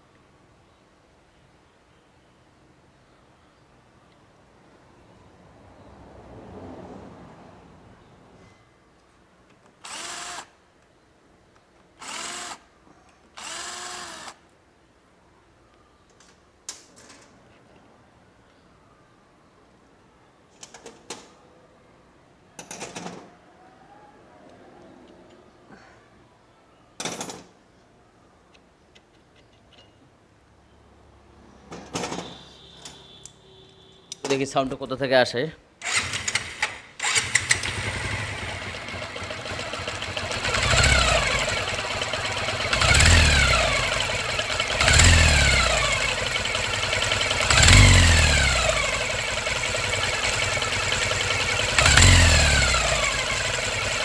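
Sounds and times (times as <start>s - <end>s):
power drill-driver spinning: 9.8s - 10.5s, 12.0s - 12.6s, 13.4s - 14.4s.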